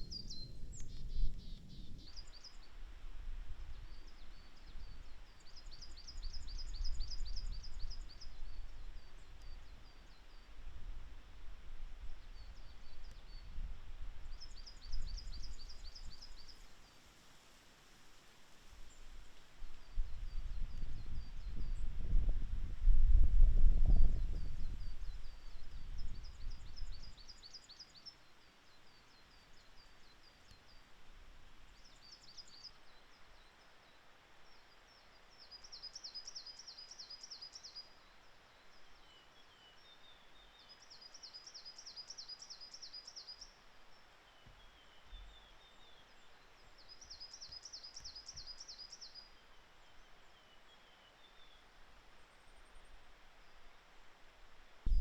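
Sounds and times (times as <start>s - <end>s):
faint lower bird chirps: 31.7s - 53.7s.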